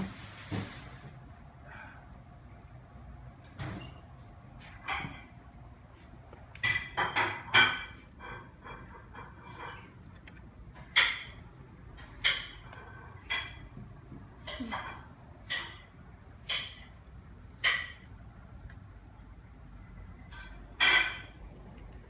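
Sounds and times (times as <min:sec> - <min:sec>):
rustling: 0:00.0 - 0:01.5
monkeys chirping: 0:01.2 - 0:01.5, 0:03.4 - 0:05.4, 0:06.2 - 0:06.9, 0:07.6 - 0:08.5, 0:09.4 - 0:10.0.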